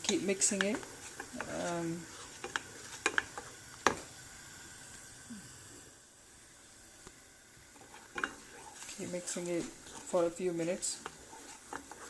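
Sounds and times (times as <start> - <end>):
utensil knocking and scraping pan: 0.0 - 4.0, 9.8 - 12.0
faint steady hiss: 0.0 - 12.0.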